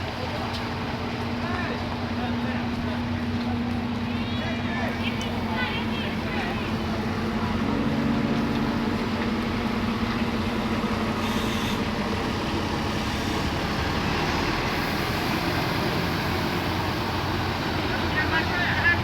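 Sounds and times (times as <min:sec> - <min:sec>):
bus diesel engine running: 0:00.0 - 0:19.0.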